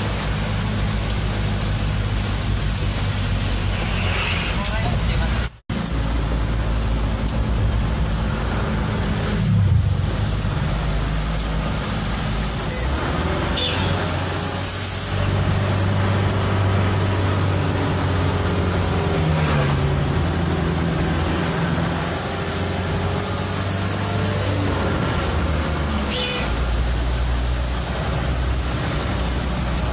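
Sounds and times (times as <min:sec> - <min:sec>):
truck engine running: 0:05.7 - 0:21.9.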